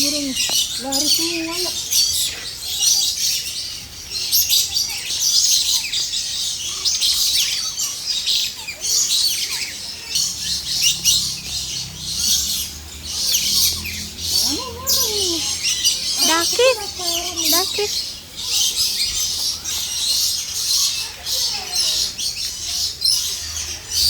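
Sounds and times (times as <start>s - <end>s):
small birds chirping: 0.0s - 24.0s.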